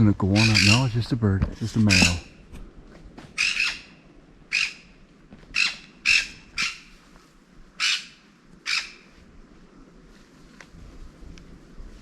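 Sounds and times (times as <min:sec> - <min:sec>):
bird squawking: 0:00.3 - 0:01.0, 0:01.8 - 0:02.4, 0:03.4 - 0:04.9, 0:05.5 - 0:06.9, 0:07.8 - 0:09.1.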